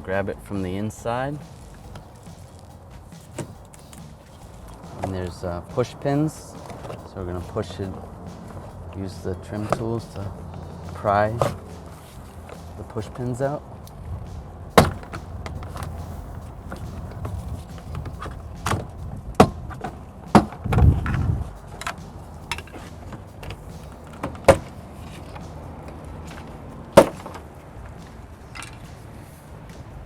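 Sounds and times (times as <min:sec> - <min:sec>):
handling noise: 0:00.0 - 0:30.0
dull thump: 0:01.4 - 0:07.6, 0:14.1 - 0:24.8, 0:26.3 - 0:28.9.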